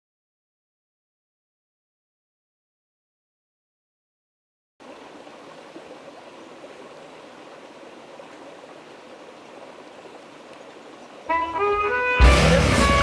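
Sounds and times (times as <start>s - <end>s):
water rushing in a stream: 4.8s - 13.0s.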